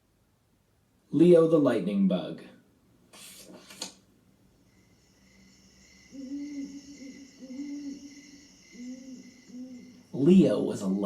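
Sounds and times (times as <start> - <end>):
crickets chirring: 4.5 - 11.0
owl hooting: 4.6 - 11.0.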